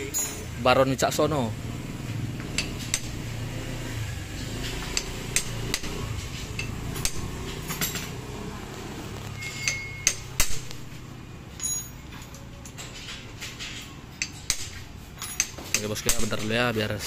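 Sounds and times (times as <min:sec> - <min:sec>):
metal tools clanking: 0:00.0 - 0:00.8, 0:04.2 - 0:08.5, 0:09.3 - 0:17.0.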